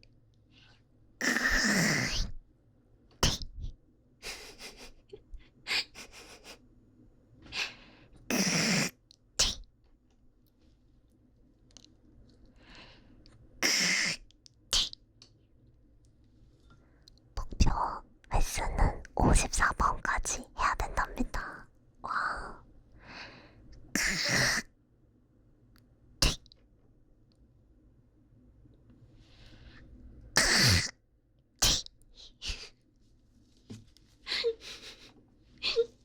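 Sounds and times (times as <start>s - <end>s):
soft mouth clicks: 3.2s - 3.7s, 9.1s - 9.7s, 14.0s - 15.0s, 25.8s - 26.6s, 31.6s - 32.6s
mouth smacking pop: 26.2s - 26.6s.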